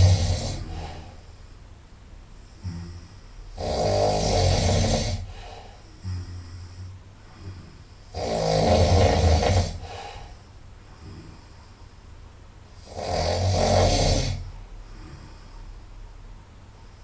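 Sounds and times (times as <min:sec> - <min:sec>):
person snoring loudly: 0:00.0 - 0:01.2, 0:02.6 - 0:10.3, 0:12.8 - 0:15.3
quiet breathing: 0:00.0 - 0:17.0.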